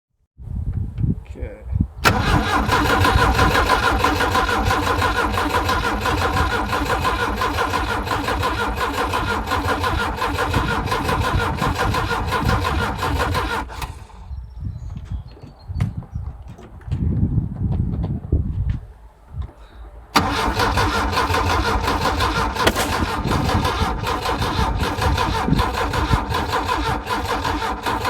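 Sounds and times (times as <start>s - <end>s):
engine cranking on starter motor: 2.0s - 14.3s, 20.2s - 28.0s.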